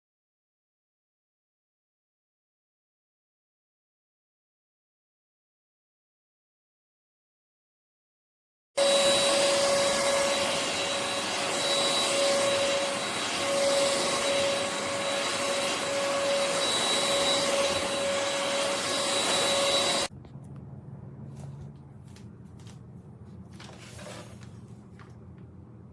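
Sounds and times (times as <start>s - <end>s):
stick vacuum running: 8.8s - 20.1s.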